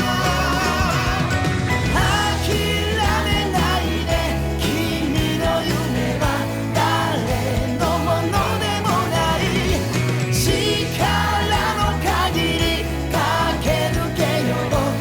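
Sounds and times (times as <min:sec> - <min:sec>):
pop rock song with singing: 0:00.0 - 0:15.0.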